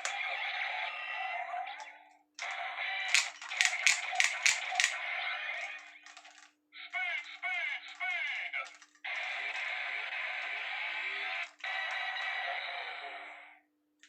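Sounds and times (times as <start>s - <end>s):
toy electronic sound effects: 0.0s - 13.6s
sharp clicks: 3.1s - 5.0s.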